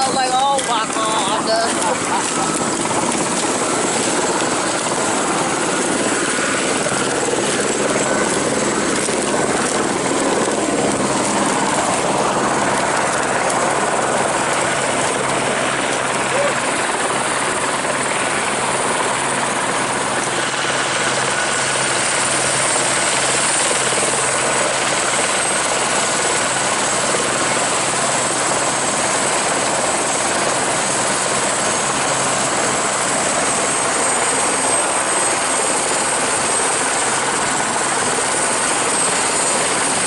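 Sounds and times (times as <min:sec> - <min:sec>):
helicopter noise inside cabin: 0:00.0 - 0:40.0.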